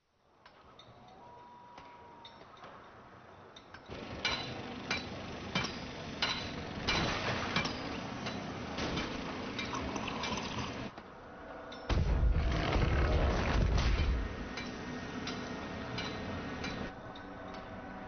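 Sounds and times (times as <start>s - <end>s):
water running: 9.2s - 10.9s.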